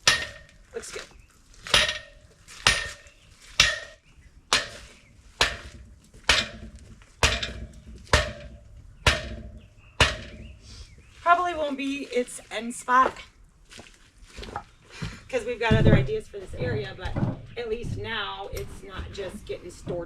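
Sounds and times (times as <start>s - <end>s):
hammer striking metal fencing: 0.0s - 0.6s, 1.7s - 4.8s, 5.4s - 10.5s.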